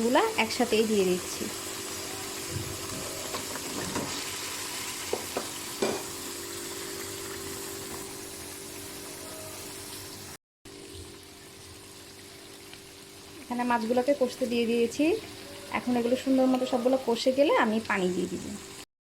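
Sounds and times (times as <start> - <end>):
fish sizzling in oil: 0.0 - 18.9.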